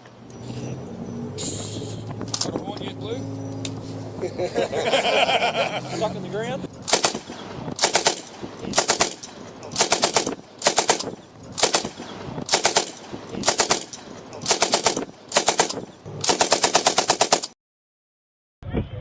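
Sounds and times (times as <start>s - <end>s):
machine gun firing bursts: 6.9s - 17.6s.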